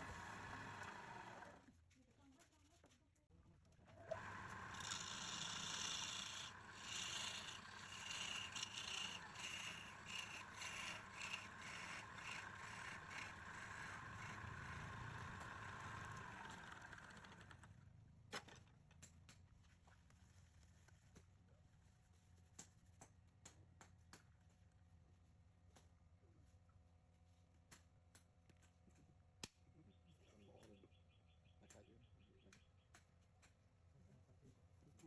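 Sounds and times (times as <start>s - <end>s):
tool scraping spinning wood: 0.0s - 1.6s, 4.0s - 17.7s
wood lathe humming: 0.0s - 1.6s, 4.0s - 17.7s.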